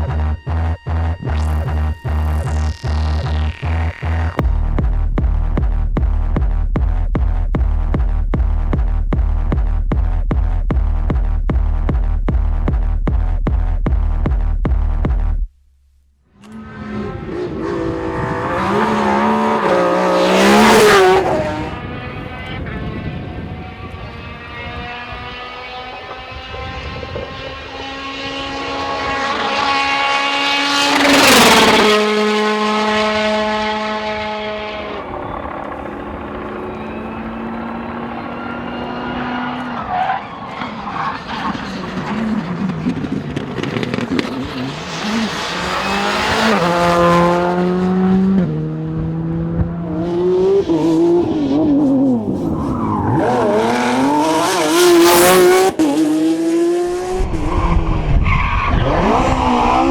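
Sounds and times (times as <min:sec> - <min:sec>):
rally cars passing at speed: 0:16.4 - 0:59.9.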